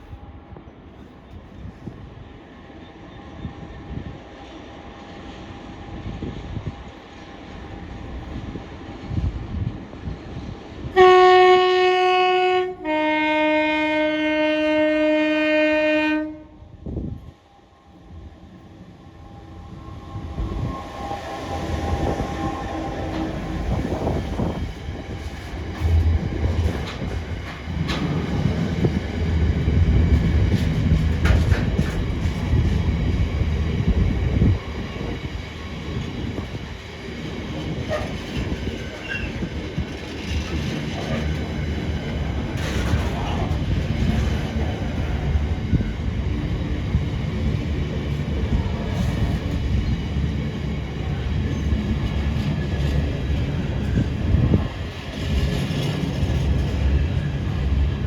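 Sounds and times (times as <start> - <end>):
two-tone locomotive horn: 10.9 - 16.7, 25.8 - 27.0
wagons clattering over rail joints: 25.2 - 29.3, 30.1 - 32.8, 37.5 - 45.3.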